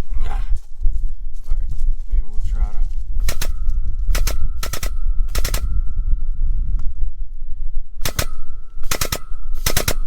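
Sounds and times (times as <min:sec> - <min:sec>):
steady low rumble: 0:00.0 - 0:10.0
metallic ratchet clicks: 0:04.2 - 0:05.7, 0:08.0 - 0:10.0.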